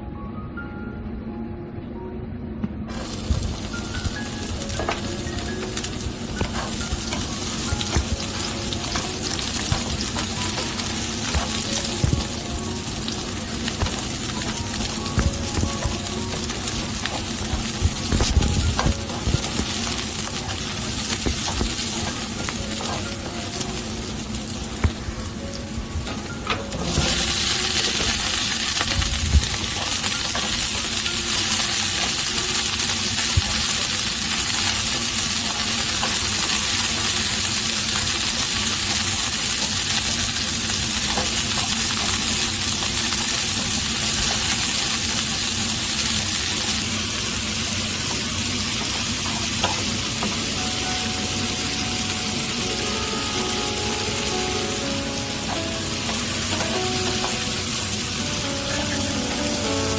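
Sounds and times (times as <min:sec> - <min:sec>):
food sizzling in oil: 0:02.9 - 0:59.9
spatula tapping pan: 0:48.0 - 0:50.6.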